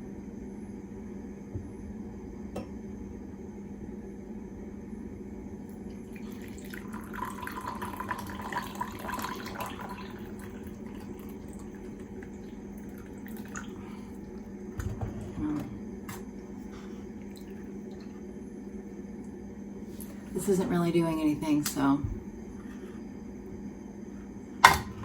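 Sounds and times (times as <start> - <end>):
coffee trickling into a cup: 5.7 - 14.6, 17.2 - 18.2.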